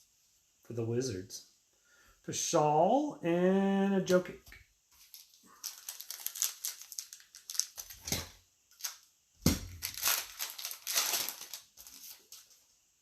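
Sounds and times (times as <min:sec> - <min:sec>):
wrapper crinkling: 0:05.0 - 0:12.6.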